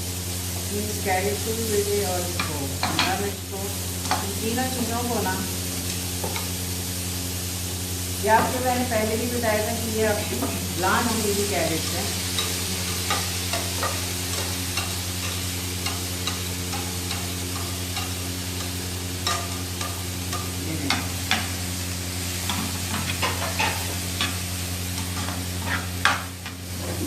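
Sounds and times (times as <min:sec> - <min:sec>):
vegetables sizzling in a pan: 0:00.0 - 0:27.0
utensil clicking against pan: 0:11.8 - 0:21.5.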